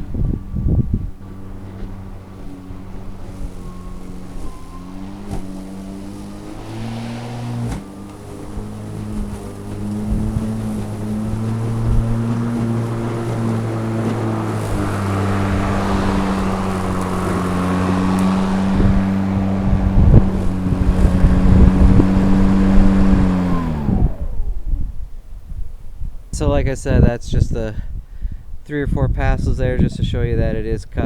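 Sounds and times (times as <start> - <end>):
mower blade spinning down: 0.0 - 24.8
electric lawn mower humming: 0.0 - 25.4
low thumps: 0.0 - 28.0.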